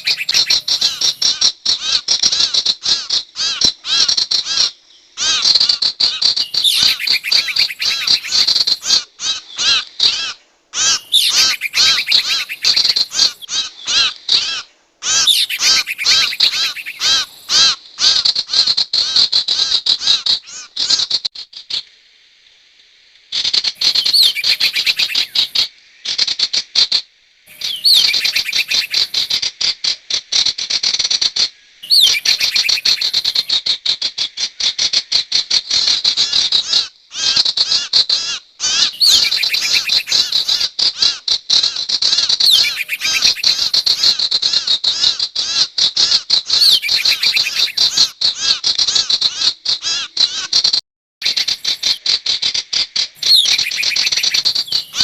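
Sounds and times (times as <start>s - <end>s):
rapid sharp bird chirps: 0.0s - 1.4s, 6.1s - 17.7s, 23.7s - 25.7s, 27.5s - 29.4s, 31.8s - 33.6s, 38.6s - 40.7s, 41.7s - 50.6s, 51.2s - 55.0s.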